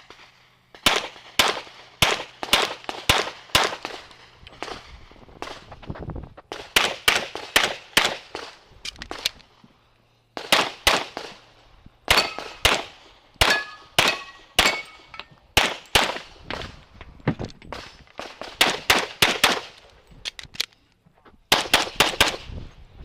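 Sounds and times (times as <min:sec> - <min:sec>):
pistol shots: 0:00.8 - 0:04.8, 0:06.5 - 0:09.2, 0:10.4 - 0:11.4, 0:12.1 - 0:15.0, 0:15.6 - 0:16.3, 0:17.7 - 0:19.8
steel targets clanging: 0:12.1 - 0:12.8, 0:13.4 - 0:16.1.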